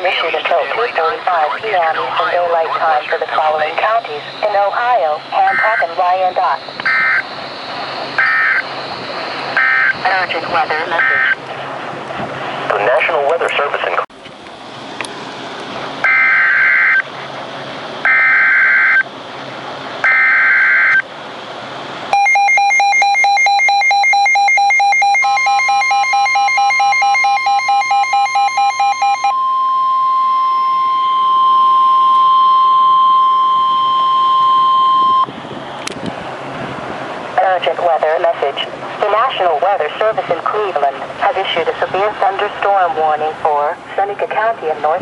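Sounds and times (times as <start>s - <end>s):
pulsing buzzy alarm: 0.0s - 11.9s, 16.0s - 17.1s, 18.0s - 19.2s, 20.0s - 21.1s, 22.1s - 35.6s
steady single-pitch alarm tone: 0.3s - 11.5s, 16.0s - 17.1s, 18.0s - 19.1s, 20.0s - 21.1s, 22.1s - 35.4s
screechy digital data tones: 3.4s - 11.4s.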